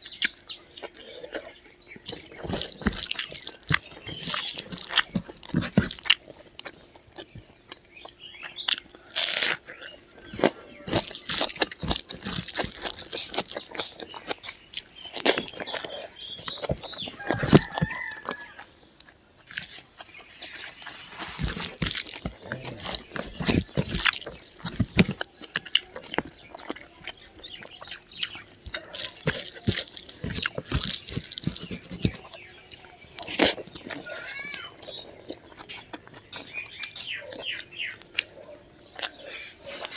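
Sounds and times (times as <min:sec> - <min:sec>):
close-miked chewing and lip-smacking: 0:00.0 - 0:39.9
crunching bites: 0:00.0 - 0:39.9
rooster crowing: 0:17.0 - 0:18.8.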